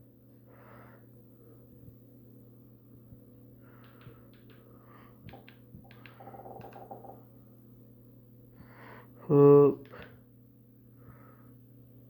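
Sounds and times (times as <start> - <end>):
phone keys clicking: 5.3 - 7.2.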